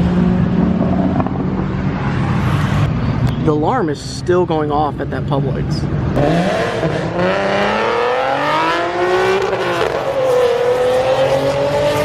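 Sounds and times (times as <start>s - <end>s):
car engine accelerating hard: 6.1s - 12.0s.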